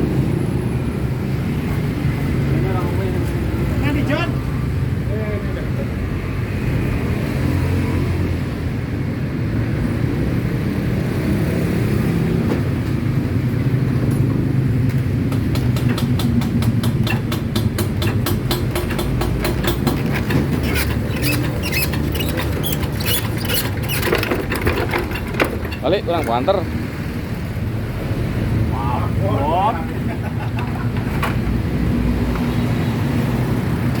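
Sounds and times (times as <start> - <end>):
rapid regular knocking clatter: 15.2 - 26.6.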